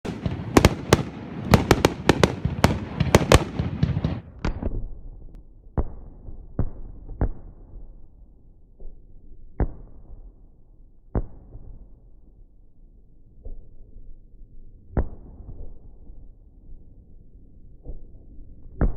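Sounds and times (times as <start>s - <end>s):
fireworks crackling bangs: 0.0s - 4.8s
single firework bangs: 0.1s - 4.7s.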